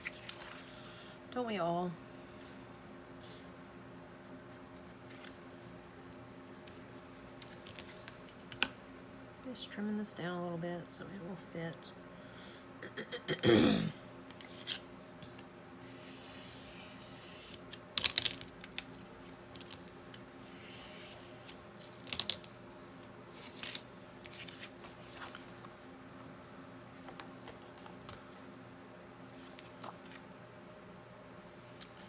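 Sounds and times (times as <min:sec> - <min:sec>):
paper rustling: 0:00.0 - 0:00.7, 0:23.3 - 0:25.8.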